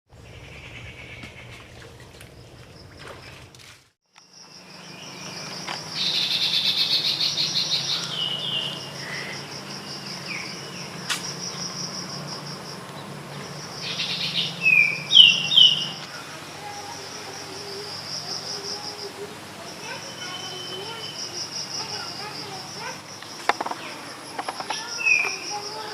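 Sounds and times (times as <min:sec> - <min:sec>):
insects trilling: 0:04.1 - 0:25.9
birds chirping: 0:04.2 - 0:12.0, 0:12.8 - 0:16.8, 0:19.8 - 0:25.9.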